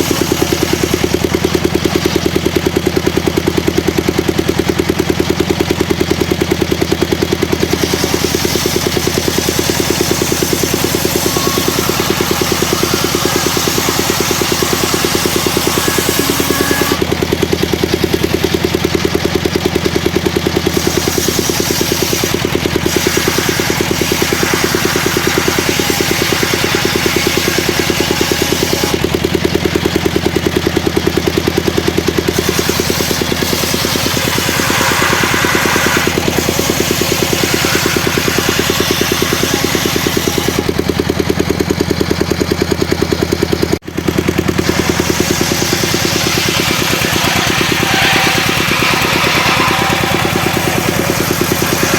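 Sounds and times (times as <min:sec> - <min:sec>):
saw blade hissing in wood: 0:00.0 - 0:01.4, 0:07.7 - 0:17.1, 0:20.6 - 0:29.1, 0:32.3 - 0:40.7, 0:44.5 - 0:51.9
saw machine engine running: 0:00.0 - 0:51.9.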